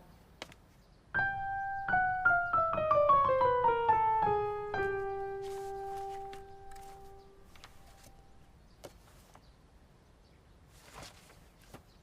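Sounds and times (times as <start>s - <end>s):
piano notes: 1.2s - 8.6s.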